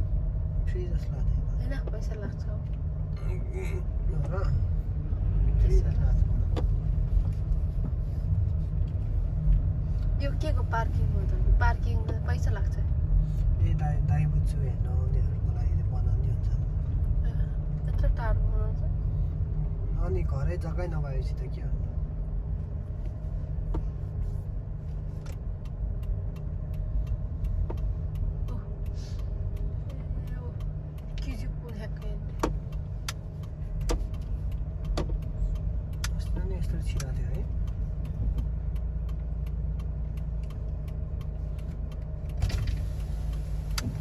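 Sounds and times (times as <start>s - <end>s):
car engine and road rumble: 0.0s - 44.0s
turn signal ticking: 3.8s - 44.0s
turn-signal ticking: 25.0s - 42.4s.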